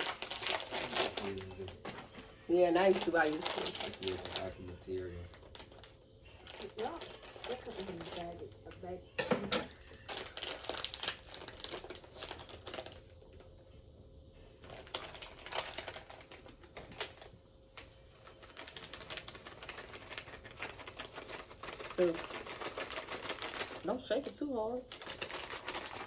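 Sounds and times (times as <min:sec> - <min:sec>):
chip bag crinkling: 0:00.0 - 0:08.8, 0:09.8 - 0:13.4, 0:14.6 - 0:26.0.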